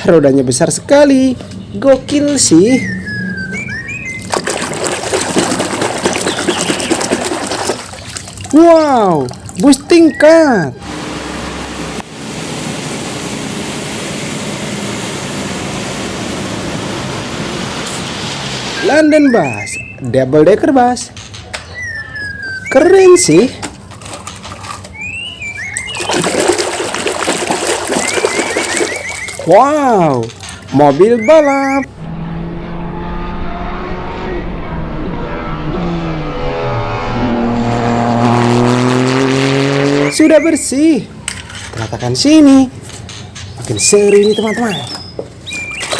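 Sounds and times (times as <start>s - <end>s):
race car engine revving: 31.9s - 40.4s.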